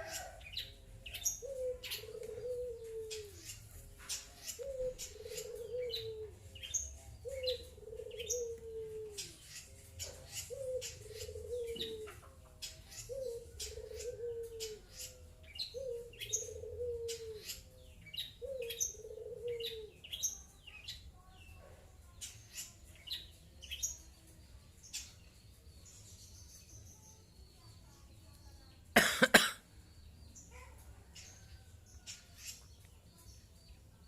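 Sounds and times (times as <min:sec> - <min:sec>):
bird chirping: 0:00.0 - 0:34.0
low cooing: 0:01.4 - 0:03.4, 0:04.6 - 0:06.4, 0:07.3 - 0:09.4, 0:10.5 - 0:12.2, 0:13.1 - 0:14.9, 0:15.8 - 0:17.4, 0:18.4 - 0:20.0.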